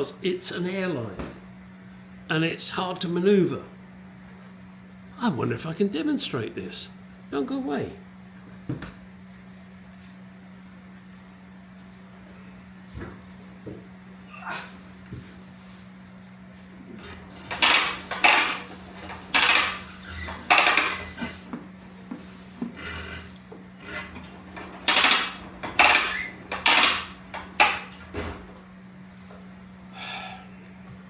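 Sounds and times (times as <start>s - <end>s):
steady low hum: 0.0s - 31.0s
metal tools clattering: 17.0s - 21.4s, 23.9s - 28.4s.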